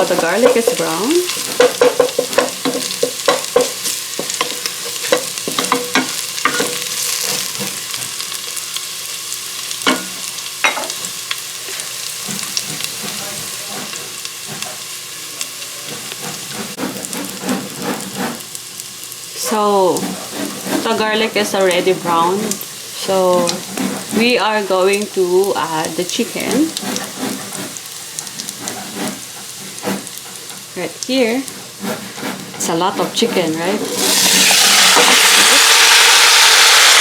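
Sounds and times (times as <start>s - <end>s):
utensil scraping and knocking pan: 0.0s - 7.8s, 15.9s - 18.5s, 19.5s - 24.5s, 26.2s - 35.6s
garlic sizzling in fat: 0.0s - 37.0s.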